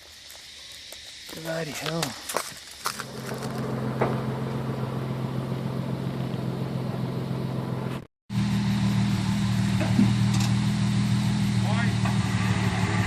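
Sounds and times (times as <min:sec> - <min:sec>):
car engine idling: 0:03.0 - 0:13.0.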